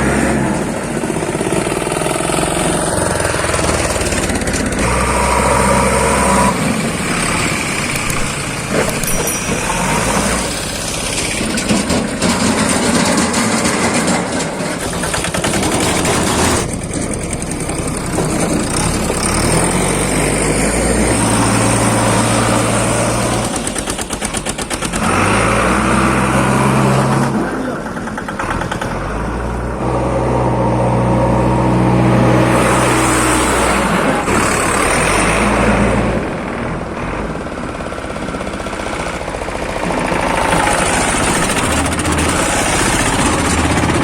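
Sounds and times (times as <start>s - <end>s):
heavy machinery diesel engine: 0.0s - 44.0s
clattering rattle: 7.8s - 19.0s.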